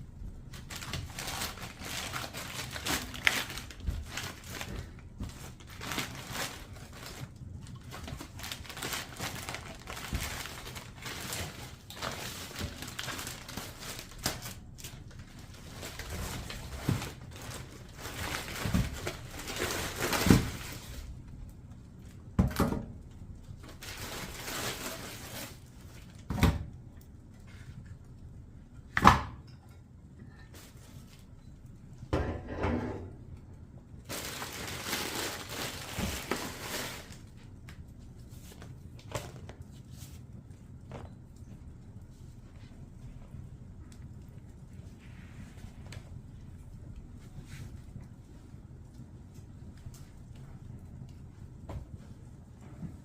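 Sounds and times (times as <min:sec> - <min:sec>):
paper crumpling and rustling: 0:00.5 - 0:21.2, 0:23.5 - 0:26.2, 0:34.0 - 0:41.0.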